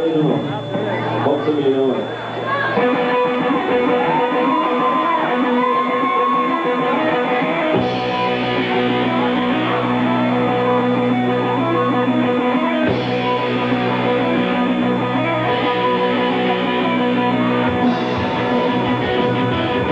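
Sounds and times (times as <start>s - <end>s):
electric guitar bending notes: 0.0s - 19.9s
live rock band playing: 2.4s - 19.9s.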